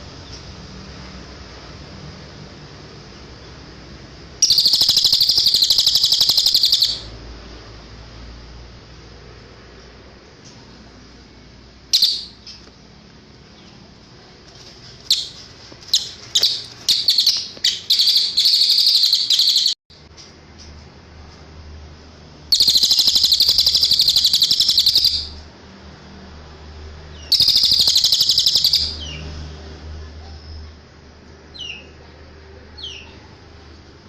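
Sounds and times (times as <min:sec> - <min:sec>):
songbird chirping and trilling: 0:04.4 - 0:07.2, 0:11.9 - 0:12.7, 0:15.0 - 0:19.8, 0:22.5 - 0:25.4, 0:27.1 - 0:29.3, 0:31.5 - 0:32.1, 0:32.7 - 0:33.3.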